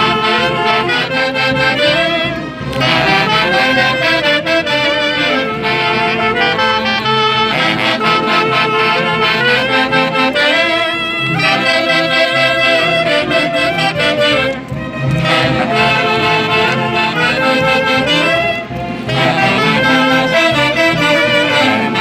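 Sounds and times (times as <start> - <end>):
festive wind band music: 0.0 - 22.0.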